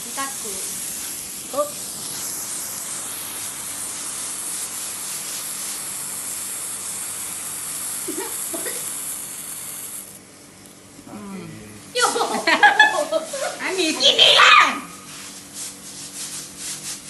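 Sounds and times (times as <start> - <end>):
firework hissing: 0.0 - 10.3, 11.9 - 14.5.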